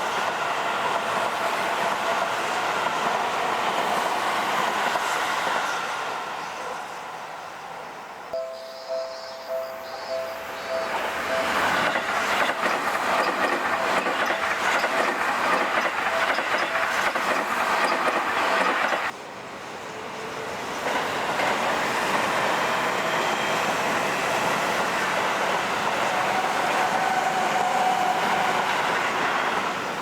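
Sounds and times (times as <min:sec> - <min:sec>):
train running past: 0:00.0 - 0:30.0
wheels clattering over rail joints: 0:11.3 - 0:19.1.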